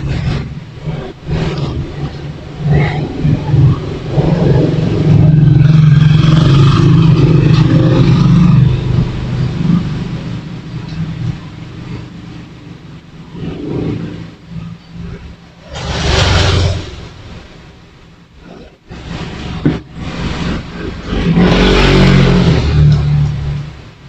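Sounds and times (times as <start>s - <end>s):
vehicle engine passing by: 13.3s - 17.6s, 19.0s - 23.8s.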